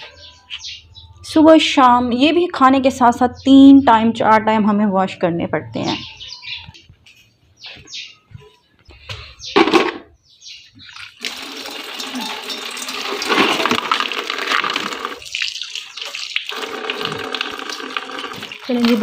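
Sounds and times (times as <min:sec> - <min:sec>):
tap water splashing into sink: 0:11.0 - 0:19.0.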